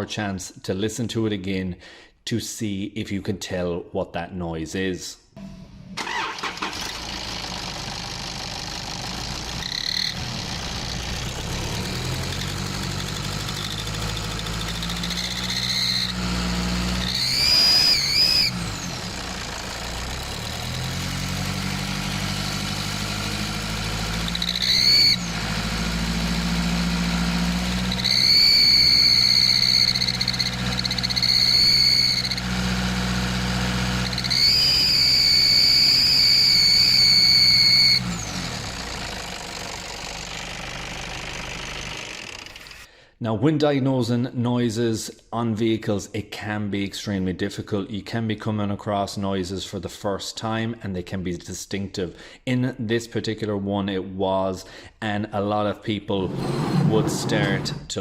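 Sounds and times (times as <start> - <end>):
diesel engine revving: 5.4 - 42.8, 56.2 - 58.0
high-pitched squeal: 9.4 - 19.6, 23.5 - 26.5, 27.1 - 32.8, 33.9 - 38.3, 56.2 - 58.0.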